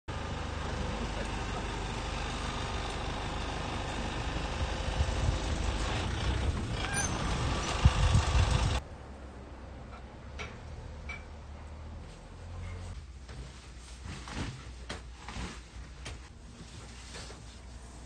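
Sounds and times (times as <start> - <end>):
engine rumbling with hiss: 0.1 - 9.9.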